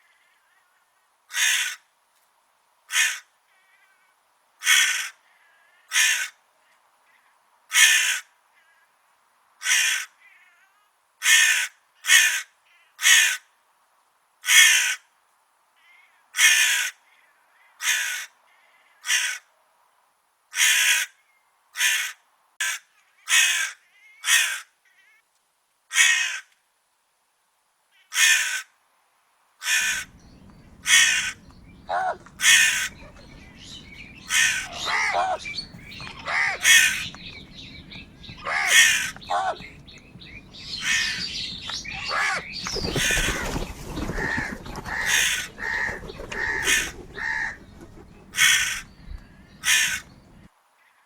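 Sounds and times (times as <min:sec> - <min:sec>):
crow cawing: 0:29.7 - 0:50.5.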